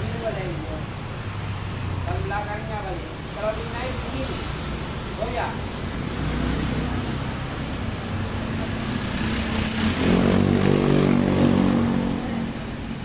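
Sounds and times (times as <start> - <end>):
motorcycle engine revving: 5.8 - 13.0.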